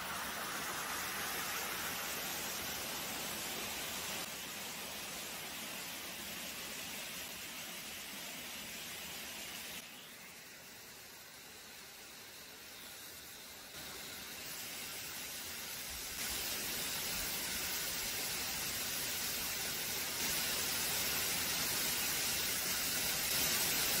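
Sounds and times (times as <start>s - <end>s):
water rushing down a spillway: 0.0s - 9.8s, 13.4s - 24.0s.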